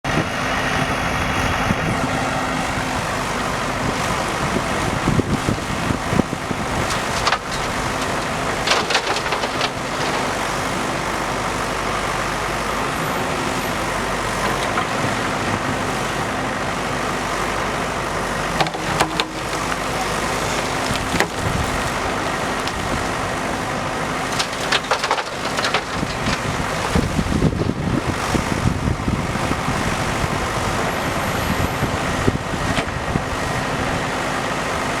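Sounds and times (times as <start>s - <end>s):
diesel engine running: 0.0s - 35.0s
sharp knocks and clanks: 18.6s - 20.1s.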